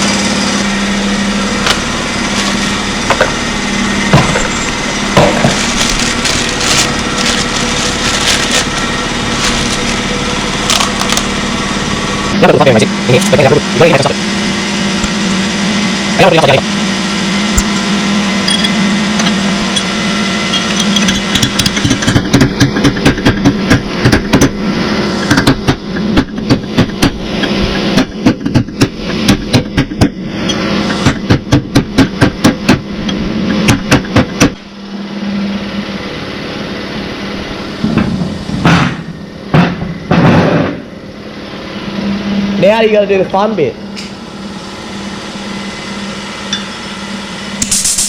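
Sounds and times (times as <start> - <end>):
air compressor humming: 0.0 - 48.0
sharp knocks: 21.3 - 24.6, 25.2 - 30.2, 31.0 - 32.9, 37.8 - 40.8.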